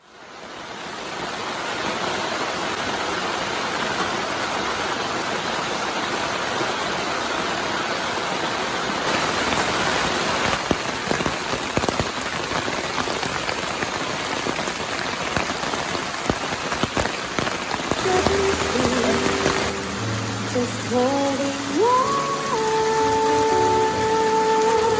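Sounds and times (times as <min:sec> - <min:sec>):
steady rain: 0:00.0 - 0:24.9
single raindrops landing: 0:09.1 - 0:24.9.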